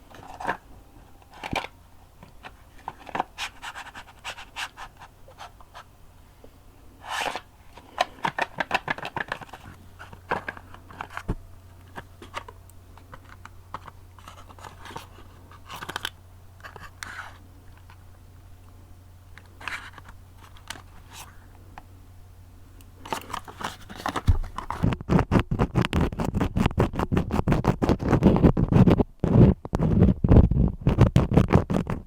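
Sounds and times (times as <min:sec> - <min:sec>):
crayons scratching: 0:02.4 - 0:05.9, 0:11.9 - 0:17.4
rustling: 0:23.0 - 0:24.9.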